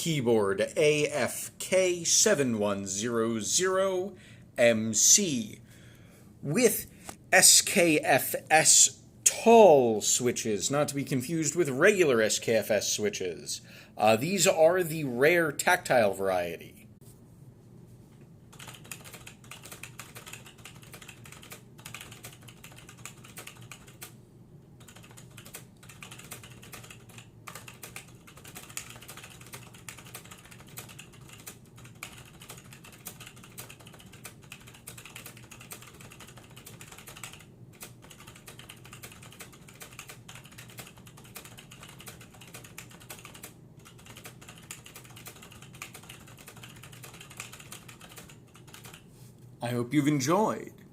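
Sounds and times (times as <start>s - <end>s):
keyboard typing: 18.5s - 24.2s, 24.8s - 49.1s.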